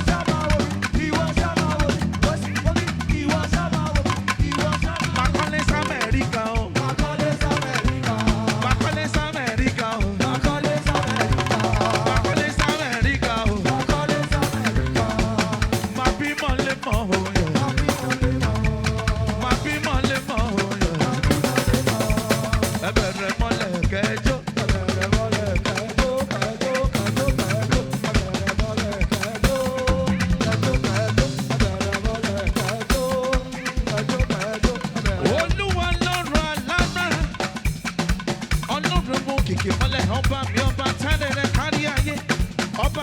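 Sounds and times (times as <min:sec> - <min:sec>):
bass line: 0:00.0 - 0:37.3
live band playing praise music: 0:00.0 - 0:43.0
steady drum beat: 0:00.0 - 0:43.0
bending lead melody: 0:13.6 - 0:20.3.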